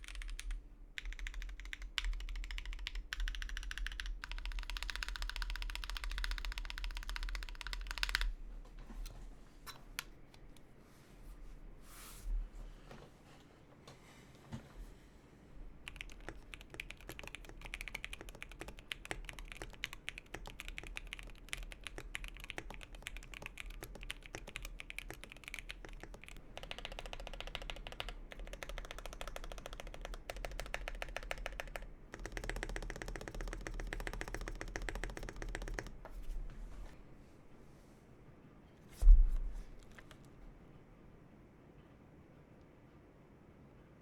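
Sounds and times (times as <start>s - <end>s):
mechanical keyboard typing: 0.0s - 8.4s, 15.8s - 36.0s.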